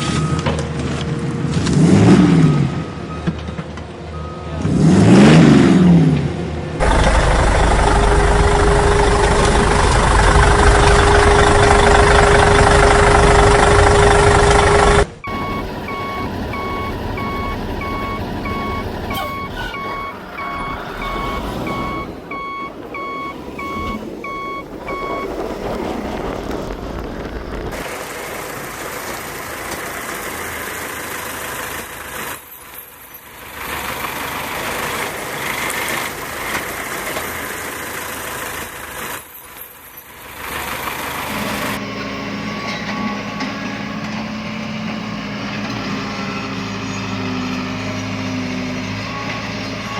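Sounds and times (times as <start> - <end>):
heavy truck engine running: 6.2 - 49.9
reversing alarm beeping: 6.8 - 25.4.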